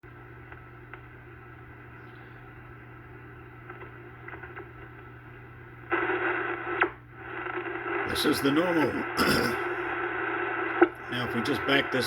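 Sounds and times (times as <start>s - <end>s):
radio speaker hiss and hum: 0.0s - 12.0s
faint clicks: 3.4s - 8.0s.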